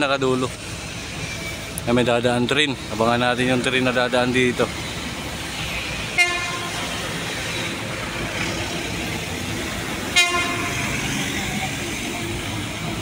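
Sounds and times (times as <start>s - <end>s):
train rumble: 0.0s - 13.0s
train horn blasts: 6.1s - 7.0s, 10.1s - 11.2s.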